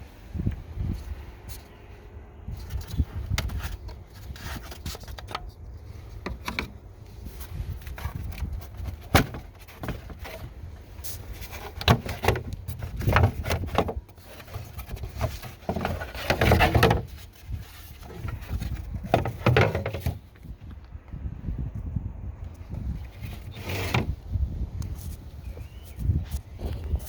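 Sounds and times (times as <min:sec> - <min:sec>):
steady low rumble: 0:00.0 - 0:04.4, 0:20.2 - 0:23.5
scraping noises: 0:02.5 - 0:20.4, 0:22.8 - 0:27.0.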